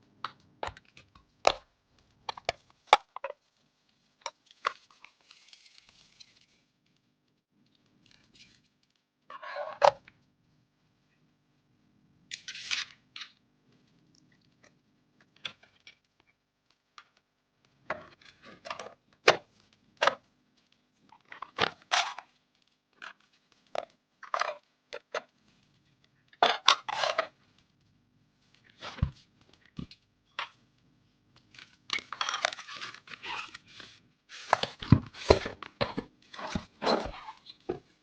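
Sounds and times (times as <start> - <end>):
packaging crinkling and rustling: 4.2 - 6.7, 31.5 - 38.0.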